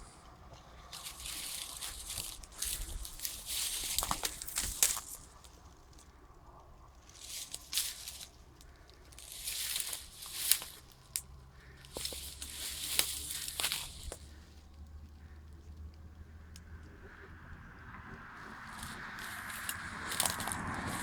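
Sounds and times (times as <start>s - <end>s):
footsteps crunching on rough ground: 0.0s - 6.1s, 7.0s - 14.5s, 18.4s - 21.0s.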